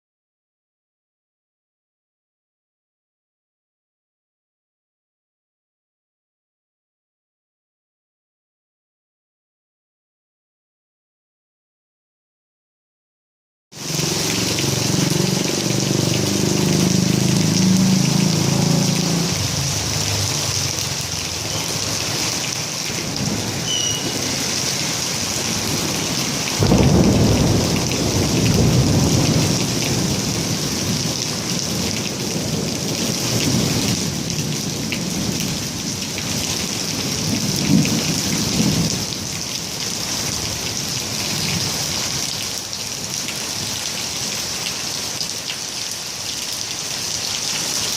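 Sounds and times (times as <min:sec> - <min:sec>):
rain falling on a roof: 0:13.8 - 0:47.9
thunder rumbling: 0:17.6 - 0:35.7.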